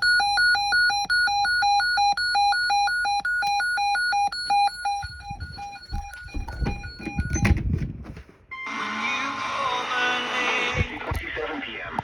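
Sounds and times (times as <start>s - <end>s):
electronic alert beeps: 0.0s - 7.6s.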